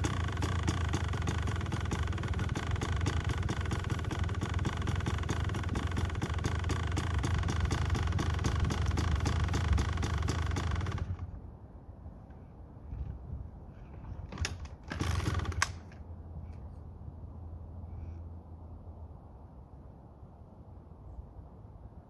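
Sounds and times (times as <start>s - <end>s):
dirt bike engine idling: 0.0s - 11.4s.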